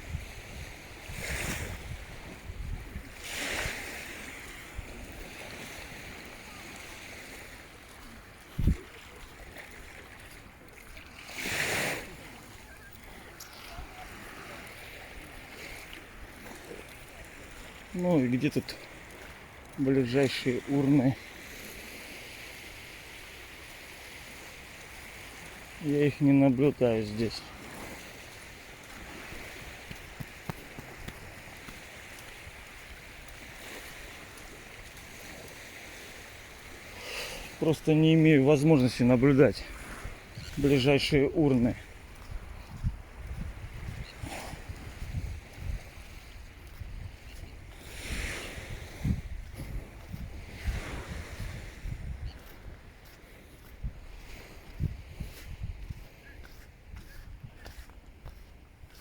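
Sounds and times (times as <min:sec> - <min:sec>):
wind noise: 0:00.0 - 0:03.9, 0:08.5 - 0:08.9, 0:41.8 - 0:59.0
sea waves washing on shore: 0:00.0 - 0:59.0.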